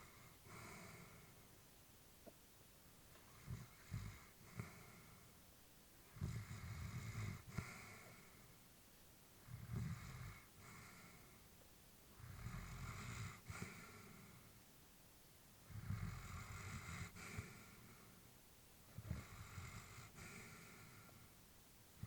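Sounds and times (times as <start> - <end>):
dog breathing with faint snore: 0.0 - 1.4, 3.3 - 5.2, 6.1 - 8.5, 9.4 - 11.4, 12.2 - 14.5, 15.7 - 18.1, 18.9 - 21.3.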